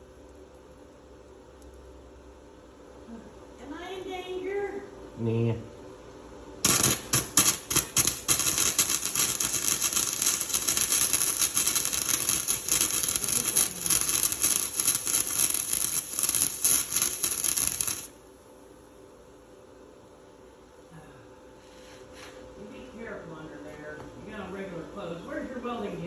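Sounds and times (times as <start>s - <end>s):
welder arc crackling: 6.6s - 18.3s.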